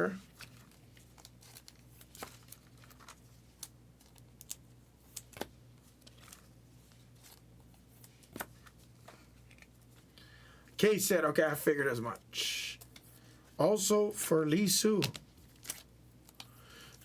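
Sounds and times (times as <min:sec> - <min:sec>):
trading cards rustling: 0:00.2 - 0:10.1, 0:14.5 - 0:17.0.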